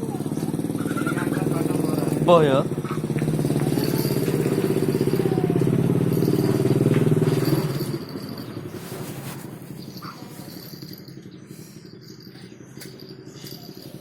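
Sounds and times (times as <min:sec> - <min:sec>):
small engine running: 0:00.0 - 0:14.0.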